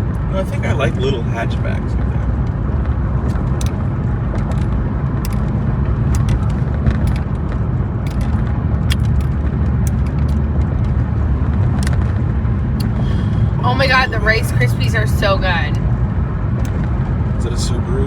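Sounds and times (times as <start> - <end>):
road and engine rumble in car: 0.0 - 18.0
light clicks and crackles: 3.2 - 12.2.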